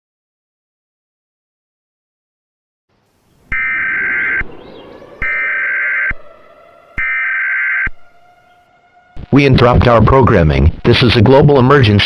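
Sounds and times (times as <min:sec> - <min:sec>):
warbling data tone bursts: 0:03.4 - 0:10.1.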